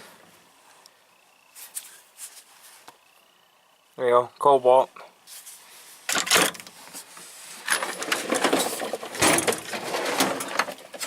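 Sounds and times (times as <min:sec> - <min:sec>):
metal tools clinking and rattling: 0:07.6 - 0:11.0.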